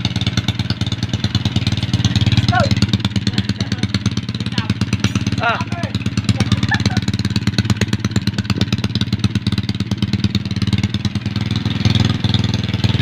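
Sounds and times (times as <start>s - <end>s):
motorcycle engine idling: 0.0s - 13.0s.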